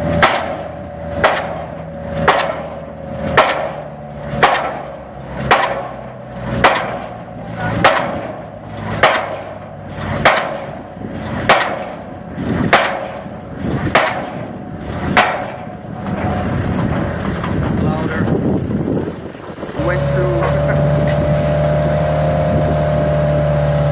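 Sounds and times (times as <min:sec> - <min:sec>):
pile driver striking: 0:00.0 - 0:17.8.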